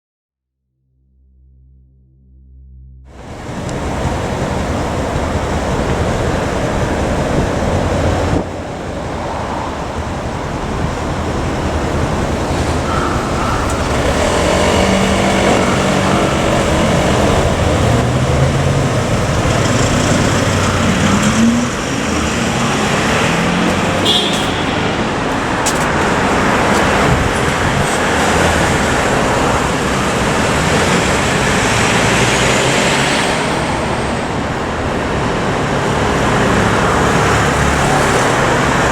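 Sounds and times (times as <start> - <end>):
road traffic: 1.2 - 38.9
vehicle engine revving: 1.3 - 38.9.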